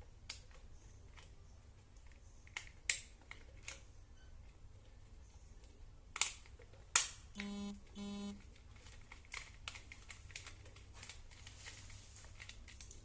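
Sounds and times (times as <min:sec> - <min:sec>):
short buzzing beeps: 0:07.4 - 0:08.4.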